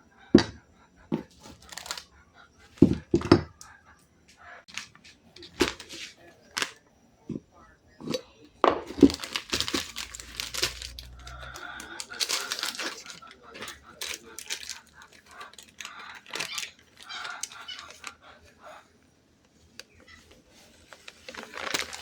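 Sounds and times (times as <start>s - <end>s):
packaging crinkling: 1.2s - 3.5s, 4.7s - 6.8s, 8.1s - 18.4s, 19.6s - 22.0s.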